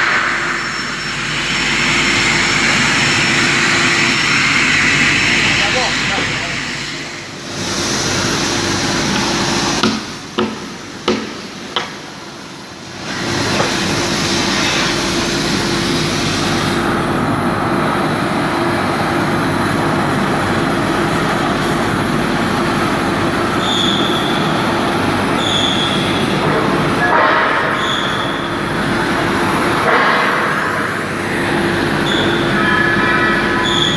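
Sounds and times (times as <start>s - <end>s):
hissing rush of steel cutting: 0.0s - 9.8s
short high squeaks: 25.4s - 26.1s, 33.6s - 33.9s.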